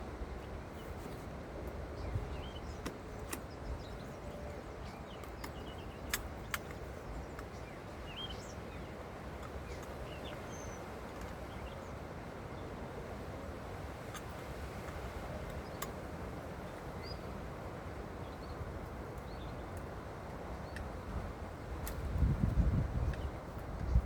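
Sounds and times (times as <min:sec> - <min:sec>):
small birds chirping: 0:00.2 - 0:24.0
sharp clicks: 0:05.1 - 0:07.6.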